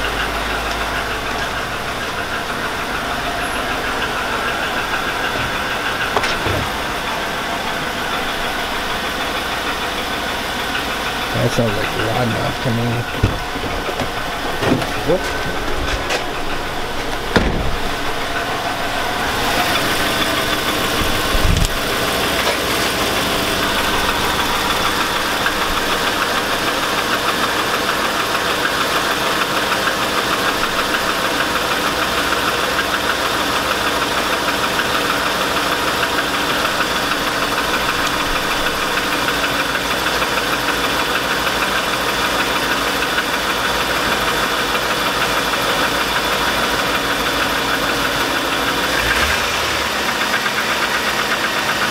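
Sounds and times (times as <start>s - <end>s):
engine idling with knock: 0.0s - 51.9s
short thump: 13.0s - 16.3s, 17.1s - 18.0s.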